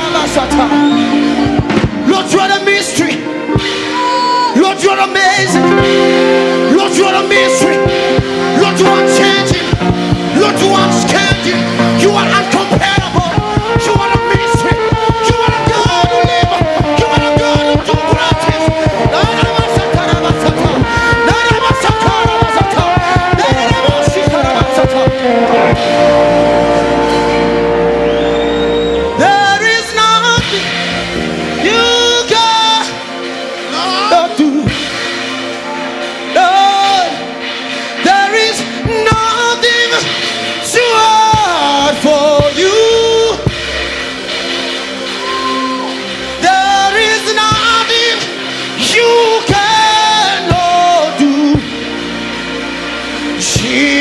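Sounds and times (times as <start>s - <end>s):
person singing wordless notes: 0.0s - 28.0s
sustained instrumental chords: 0.0s - 54.0s
held chord over bass note: 5.5s - 28.9s.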